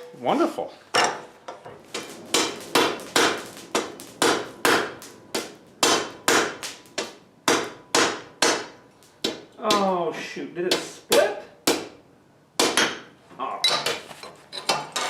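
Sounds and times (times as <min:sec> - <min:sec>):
hammer striking steel bar: 0:02.0 - 0:09.9.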